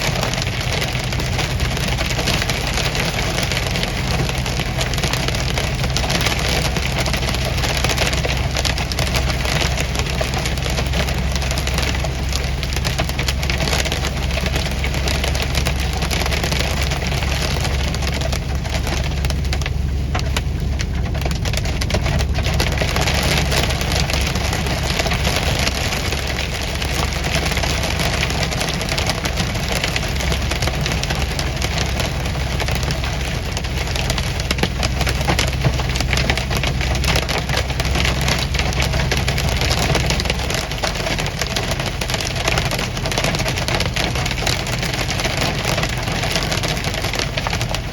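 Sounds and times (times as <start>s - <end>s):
engine hum and road noise: 0.0s - 47.9s
hail and rain pelting vehicle: 0.0s - 47.9s.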